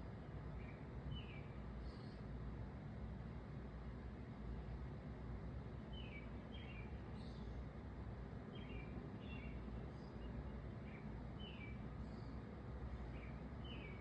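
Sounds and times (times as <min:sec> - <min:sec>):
low outdoor rumble: 0:00.0 - 0:14.0.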